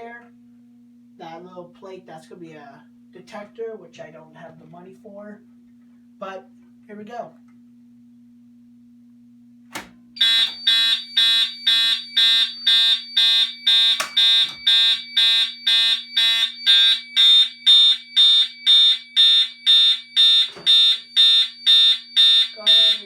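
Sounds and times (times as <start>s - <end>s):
fire alarm horn pulsing: 10.2s - 23.0s.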